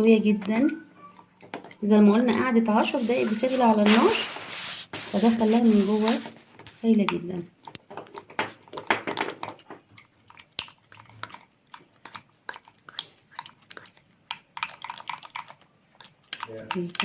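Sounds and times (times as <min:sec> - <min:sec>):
pulp scraping through tea strainer: 0:02.7 - 0:06.8.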